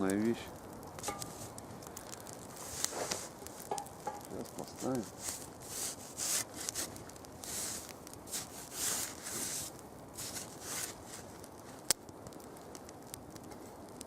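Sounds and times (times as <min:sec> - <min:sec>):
camp gear scraping and rustling: 0:01.0 - 0:01.6, 0:02.5 - 0:03.8, 0:04.6 - 0:11.4.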